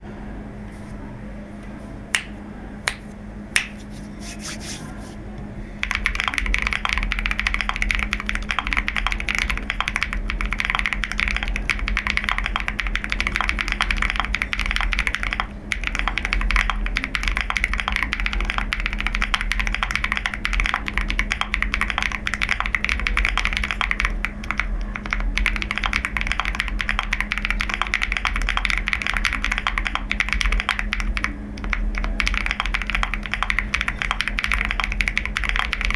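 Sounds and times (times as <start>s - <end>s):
steady low hum: 0.0s - 35.9s
mechanical keyboard typing: 5.8s - 35.9s.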